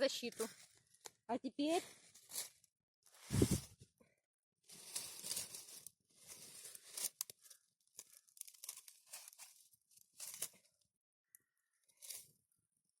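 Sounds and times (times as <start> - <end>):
dry material rustling and crinkling: 4.7 - 10.7.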